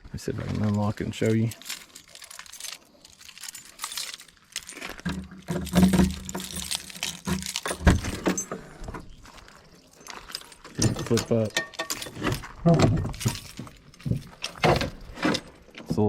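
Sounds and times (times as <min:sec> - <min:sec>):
keys jangling in a lock: 0:00.7 - 0:15.8.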